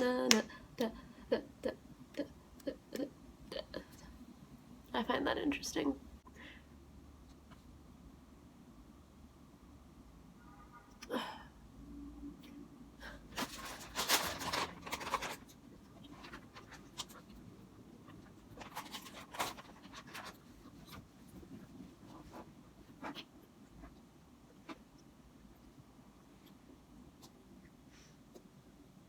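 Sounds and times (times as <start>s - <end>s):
paper pages rustling: 13.3s - 17.4s, 18.1s - 23.9s.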